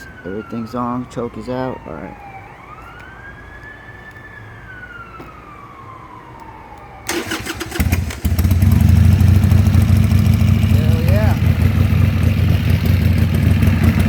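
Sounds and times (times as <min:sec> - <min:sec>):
faint siren wailing: 0:00.0 - 0:14.0
starter motor cranking: 0:07.1 - 0:08.9
motorcycle engine running: 0:07.2 - 0:14.0.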